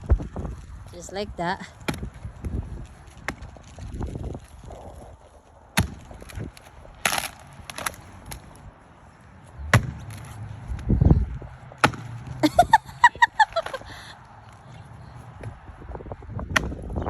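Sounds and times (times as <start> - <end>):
axe chopping wooden stump: 1.8 - 2.1, 5.8 - 8.4, 9.7 - 10.3, 11.8 - 12.3, 16.5 - 16.9
wood cracking: 1.8 - 8.7.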